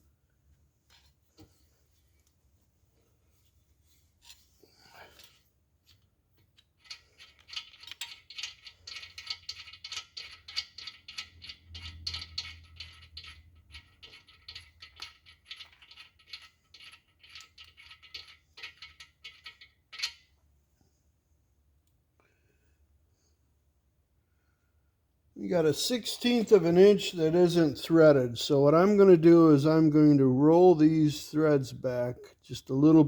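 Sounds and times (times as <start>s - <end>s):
small metal tools clicking: 6.6s - 20.2s.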